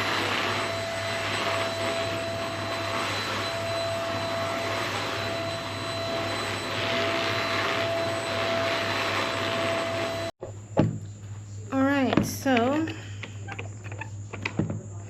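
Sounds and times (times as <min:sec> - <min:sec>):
vacuum cleaner running: 0:00.0 - 0:10.4.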